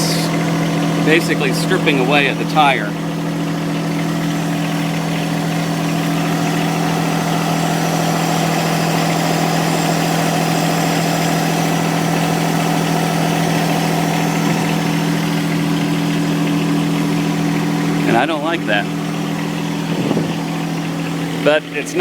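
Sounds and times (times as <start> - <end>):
tractor diesel engine idling: 0.0 - 22.0.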